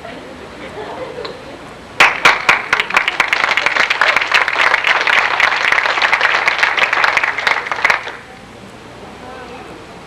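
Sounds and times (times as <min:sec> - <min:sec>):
audience applauding: 0:02.0 - 0:08.2.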